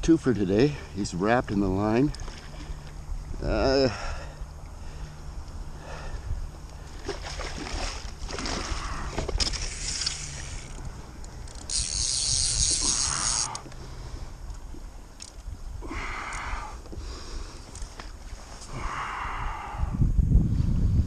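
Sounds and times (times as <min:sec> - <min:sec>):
wind rumble on microphone: 0:01.0 - 0:21.0
water splashing and sloshing: 0:01.9 - 0:03.5, 0:04.5 - 0:11.6.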